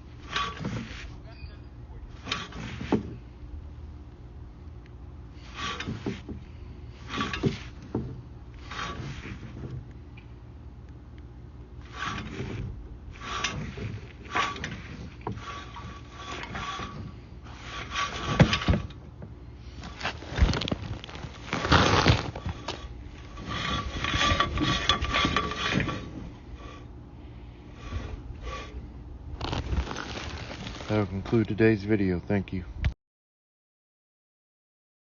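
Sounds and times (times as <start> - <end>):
camera cable scraping inside pipe: 0.0 - 1.2, 2.1 - 3.2, 5.3 - 9.9, 11.8 - 19.0, 19.6 - 26.9, 27.7 - 31.4
faint steady high tone: 1.2 - 1.9.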